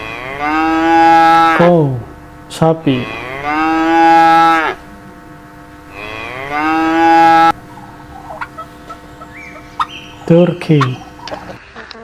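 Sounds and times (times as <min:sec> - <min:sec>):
cow mooing: 0:00.0 - 0:01.7, 0:02.9 - 0:04.8, 0:05.9 - 0:10.1.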